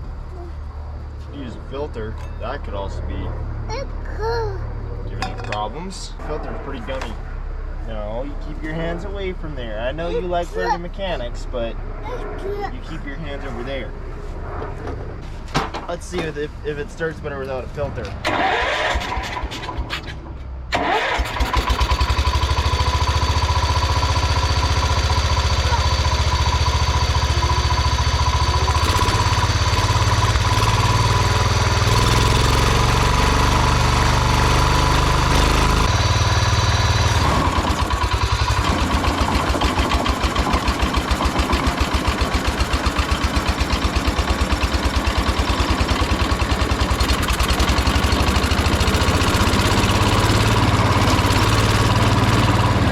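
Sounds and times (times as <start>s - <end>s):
engine cranking: 18.1s - 36.0s, 37.0s - 52.9s
mower engine running: 18.2s - 19.9s, 20.7s - 52.9s.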